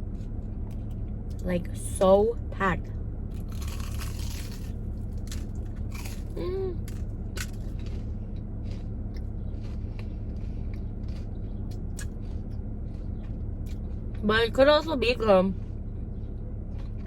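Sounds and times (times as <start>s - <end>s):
crunchy chewing: 3.3s - 14.2s, 15.6s - 17.0s.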